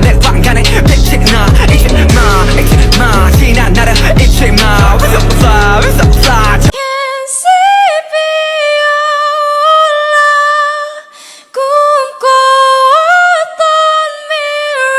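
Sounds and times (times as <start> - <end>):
pop backing music: 0.0 - 6.8
high solo voice singing: 0.0 - 14.9.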